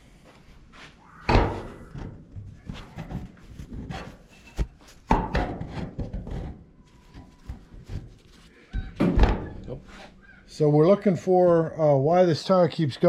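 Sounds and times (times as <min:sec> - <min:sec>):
knocks and rubbing: 0:01.3 - 0:10.2.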